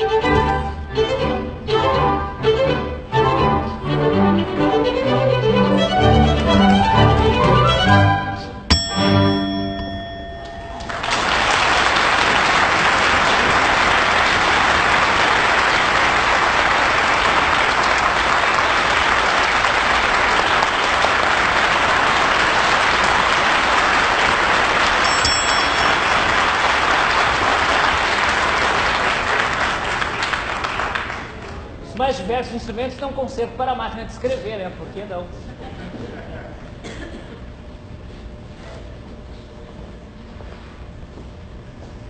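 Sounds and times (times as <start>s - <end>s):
audience applauding: 10.7s - 31.7s.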